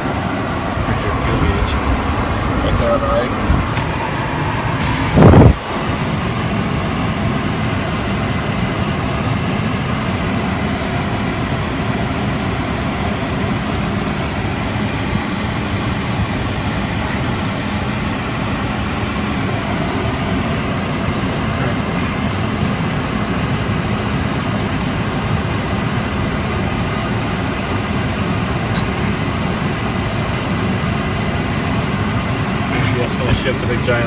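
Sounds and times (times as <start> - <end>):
car engine idling: 0.0 - 34.0
loud thump: 3.4 - 4.0.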